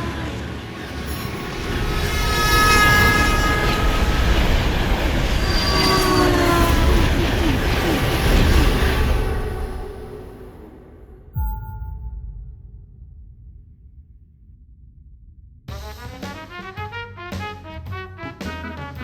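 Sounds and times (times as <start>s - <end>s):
train wagons rumbling: 0.0s - 11.3s.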